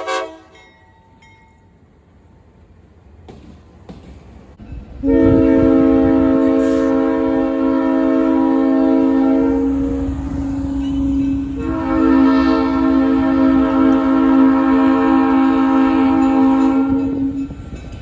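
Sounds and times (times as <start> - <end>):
locomotive air horn chord: 0.0 - 0.6, 5.0 - 17.3
train rumble: 0.0 - 18.0.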